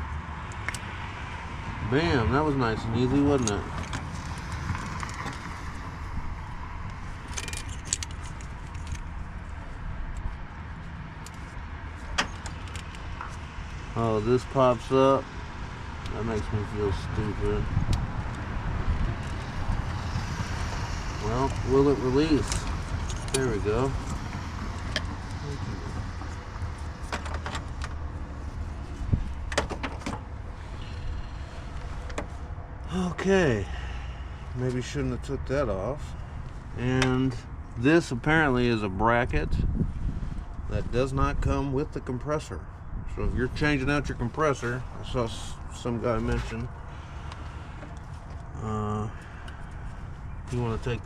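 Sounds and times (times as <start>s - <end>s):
metal tools clinking and rattling: 7.2s - 9.0s.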